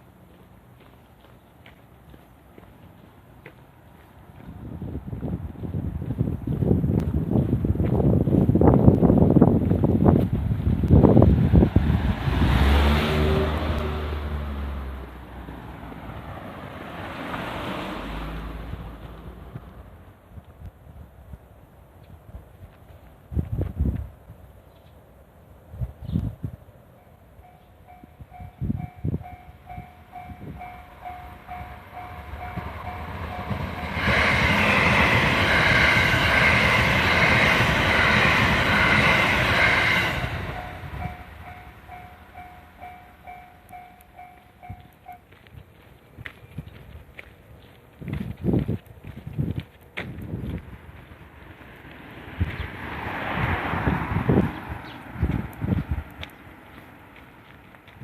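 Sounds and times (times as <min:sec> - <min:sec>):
train passing: 0:00.0 - 0:21.7, 0:26.6 - 0:58.0
vehicle engine passing: 0:11.3 - 0:19.9, 0:30.6 - 0:43.4
level crossing bell clanging: 0:27.5 - 0:34.1, 0:40.5 - 0:45.3.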